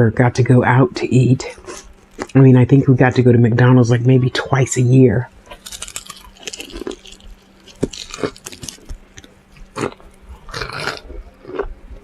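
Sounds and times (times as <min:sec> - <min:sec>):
person chewing crunchy food: 0:01.5 - 0:02.4, 0:05.3 - 0:12.0.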